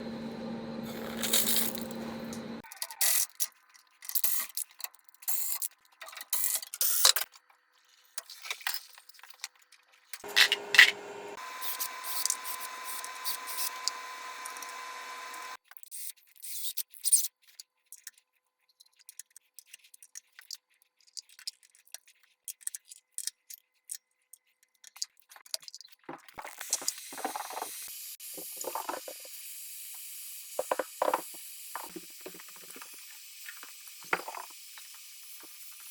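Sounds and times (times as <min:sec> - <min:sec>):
steady hum with held tones: 0:00.0 - 0:02.6, 0:10.2 - 0:15.6
tools and pipe parts clicking: 0:08.2 - 0:11.0.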